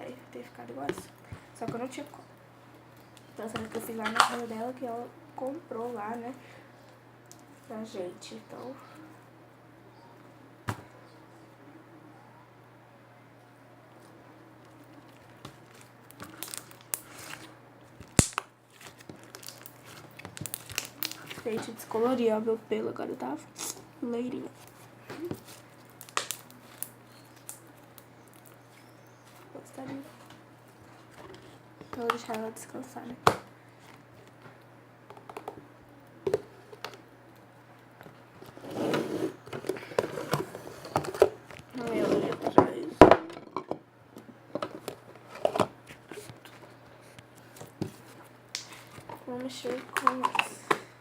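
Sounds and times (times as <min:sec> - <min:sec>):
low steady hum: 0:00.0 - 0:51.0
rustling squishing noise: 0:13.9 - 0:22.2, 0:23.5 - 0:32.6, 0:44.7 - 0:51.0
slime being stretched and squished: 0:15.1 - 0:21.5.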